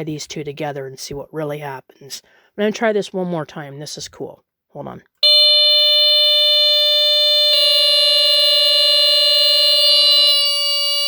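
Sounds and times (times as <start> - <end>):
smoke detector horns sounding: 5.2 - 11.0.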